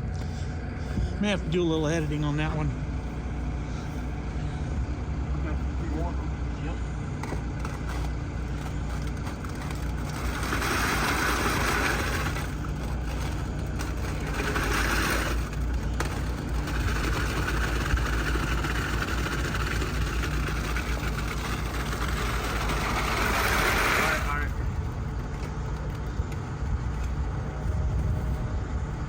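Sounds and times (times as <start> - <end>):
diesel engine running: 0.0 - 29.0
harsh rushing noise: 13.8 - 25.1.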